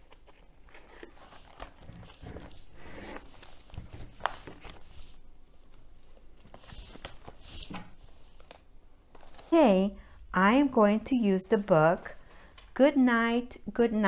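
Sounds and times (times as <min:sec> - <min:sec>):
paper rustling: 0:00.0 - 0:10.1.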